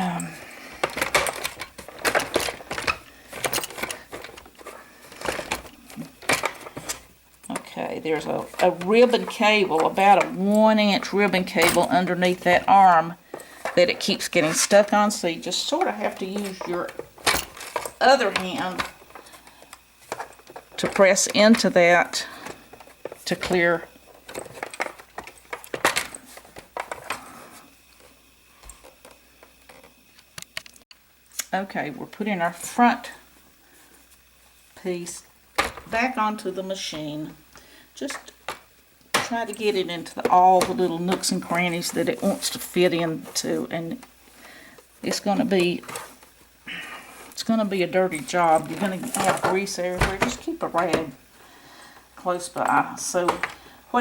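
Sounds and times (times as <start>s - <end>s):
plastic parts clicking and knocking: 0.7s - 15.1s, 15.8s - 27.2s, 35.6s - 36.0s
plastic parts clicking: 0.8s - 7.7s.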